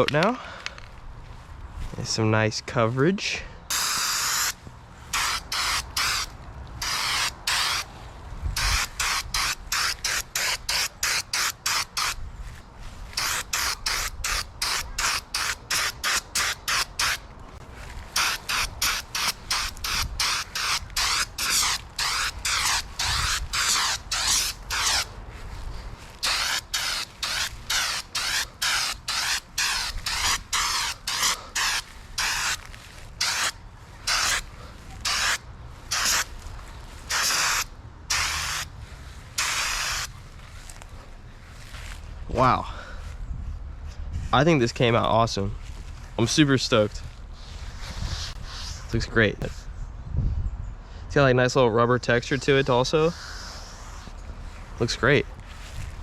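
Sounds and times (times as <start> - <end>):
aerosol can spraying in short bursts: 3.7 - 7.8, 8.6 - 12.2, 18.2 - 25.1, 26.2 - 32.6, 34.1 - 34.4, 35.0 - 36.3, 37.1 - 38.7, 39.4 - 40.1.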